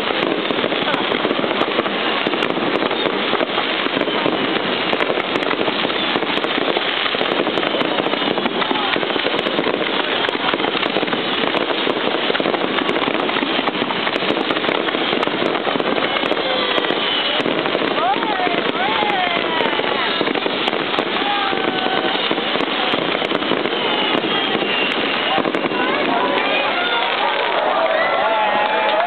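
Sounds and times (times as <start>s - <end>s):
fireworks bangs and crackling: 0.0s - 29.0s.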